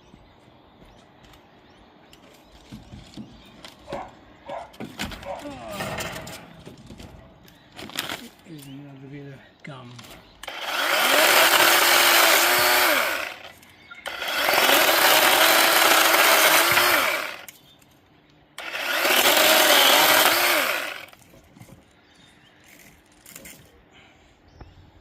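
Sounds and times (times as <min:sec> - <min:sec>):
chainsaw revving: 0:10.4 - 0:17.5, 0:18.6 - 0:21.2.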